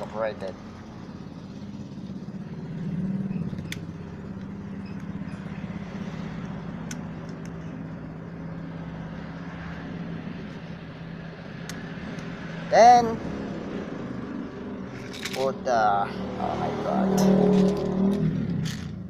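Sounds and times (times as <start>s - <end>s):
engine humming: 0.0s - 19.0s.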